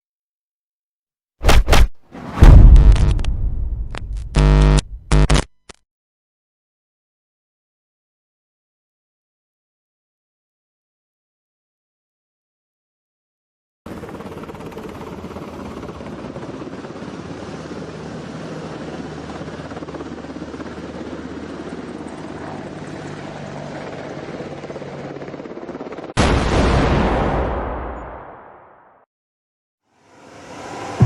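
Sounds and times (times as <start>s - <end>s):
explosion sound effect: 1.4s - 5.1s, 26.2s - 28.6s
helicopter rotor chopping: 13.9s - 26.2s.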